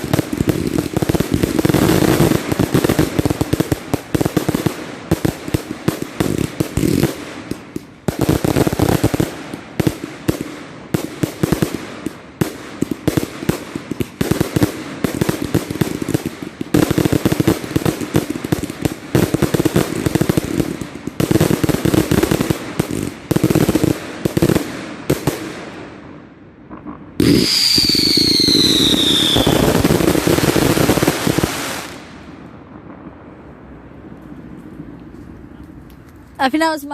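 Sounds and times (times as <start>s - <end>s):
firework bangs and crackles: 0.0s - 36.7s
firework hissing with whistles: 27.2s - 32.0s.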